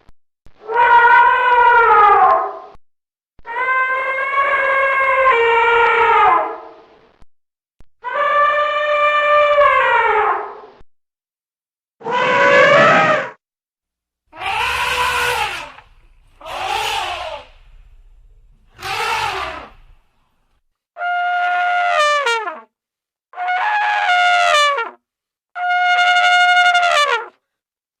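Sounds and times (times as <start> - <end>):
elephant cries: 3.5 - 6.6, 8.0 - 10.5, 12.0 - 13.3, 14.3 - 20.0
elephant trumpet blasts: 14.3 - 20.1
low rumble: 14.4 - 20.5.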